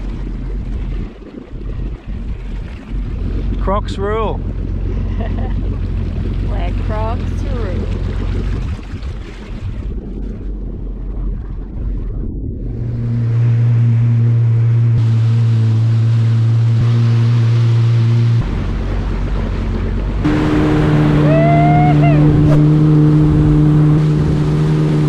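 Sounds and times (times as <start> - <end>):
wind and water rushing: 0.0 - 5.0, 5.7 - 10.8, 18.4 - 25.0
jet ski engine drone: 0.0 - 25.0.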